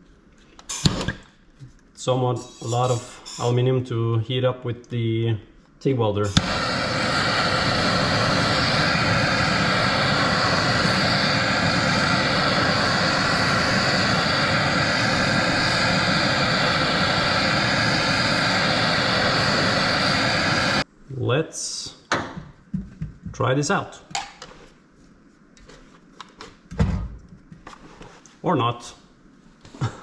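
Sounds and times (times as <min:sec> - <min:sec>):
gas torch burning: 0:00.7 - 0:01.3, 0:02.1 - 0:03.7, 0:06.2 - 0:20.9.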